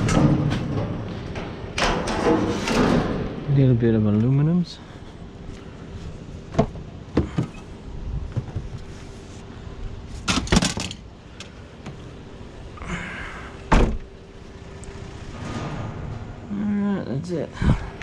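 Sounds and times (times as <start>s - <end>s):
scrap metal knocks and clanks: 0.0s - 3.5s, 15.3s - 16.5s
faint hum: 0.0s - 18.0s.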